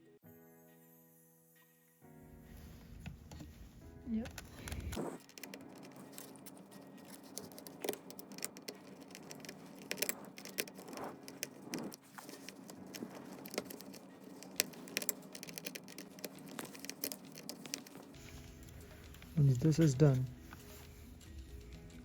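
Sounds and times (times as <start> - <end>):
screw being turned by hand: 4.3 - 18.6.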